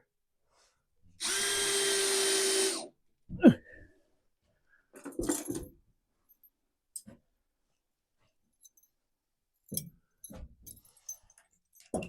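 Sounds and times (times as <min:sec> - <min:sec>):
power drill driving a screw: 0:01.2 - 0:02.9.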